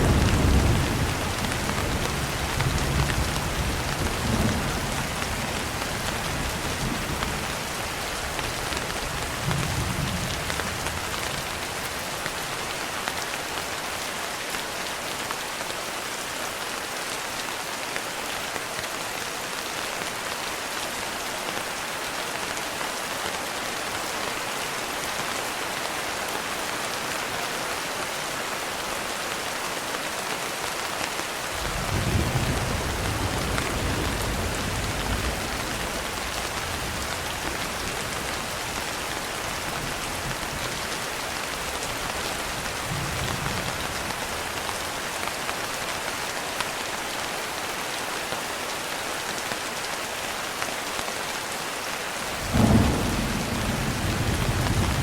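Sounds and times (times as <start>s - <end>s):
low thunder rumbles: 0.0s - 7.8s, 31.6s - 40.7s, 52.4s - 55.0s
heavy rain: 0.0s - 55.0s.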